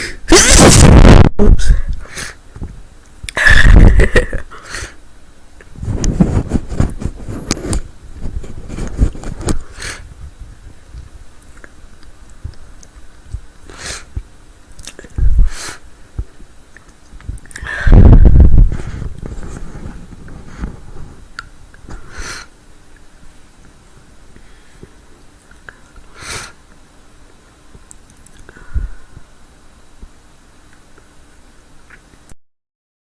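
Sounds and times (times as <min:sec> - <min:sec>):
woman sneezing: 0:00.0 - 0:01.9
sniffling and nasal breathing: 0:03.4 - 0:05.0, 0:05.8 - 0:10.2, 0:13.6 - 0:14.2, 0:15.0 - 0:16.0, 0:17.5 - 0:21.2, 0:21.8 - 0:22.6, 0:25.6 - 0:26.6.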